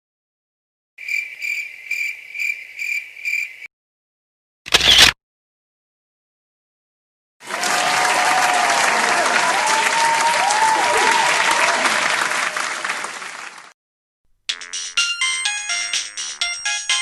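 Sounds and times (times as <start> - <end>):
people cheering: 7.4 - 13.7
crowd clapping: 7.4 - 13.8.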